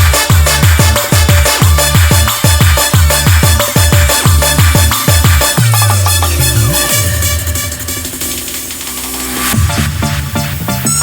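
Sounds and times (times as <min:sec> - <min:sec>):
fast kick drum: 0:00.0 - 0:10.7
electronic dance music: 0:00.0 - 0:11.0
steady bass line: 0:00.0 - 0:11.0.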